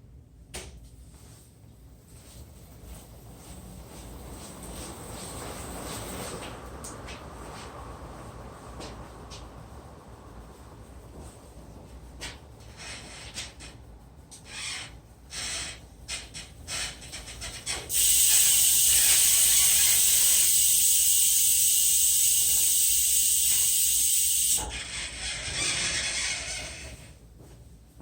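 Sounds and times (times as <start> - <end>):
bike freehub ticking: 17.9 - 24.9
freehub high buzz: 17.9 - 27.0.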